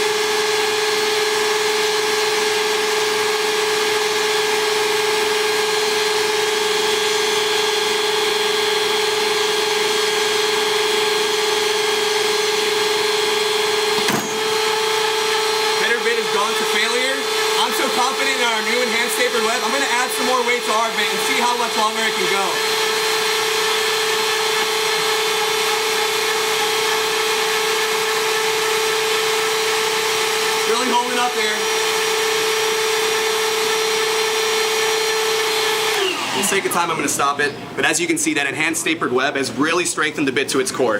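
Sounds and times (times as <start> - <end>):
power drills whining: 0.0 - 37.6.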